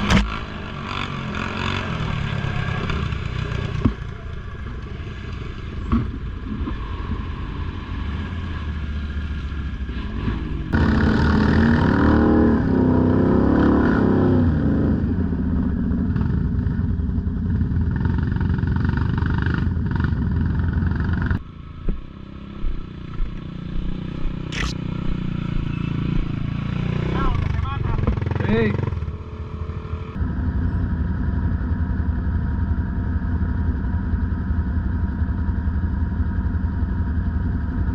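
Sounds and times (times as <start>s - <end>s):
atv engine revving: 0.0s - 15.1s, 17.9s - 30.2s.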